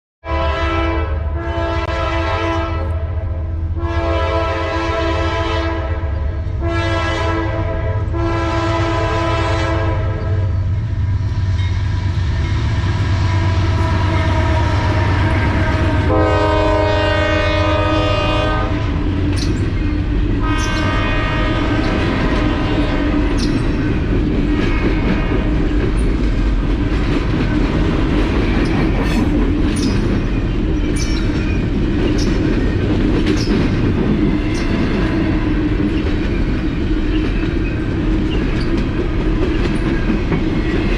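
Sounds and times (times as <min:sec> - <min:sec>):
locomotive horn blasts: 0:00.2 - 0:10.6, 0:13.2 - 0:19.0, 0:20.4 - 0:23.1
low rumble of passing train: 0:00.2 - 0:40.9
wheels clicking over rail joints: 0:18.9 - 0:21.0, 0:21.7 - 0:40.9.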